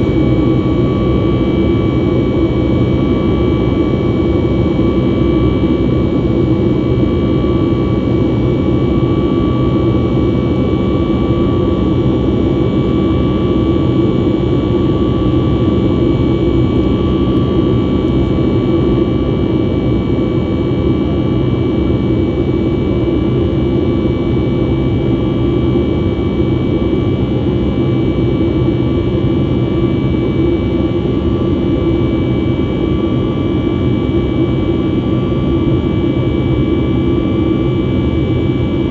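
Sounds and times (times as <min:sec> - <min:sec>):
jet engine rush in cabin: 0:00.0 - 0:38.9.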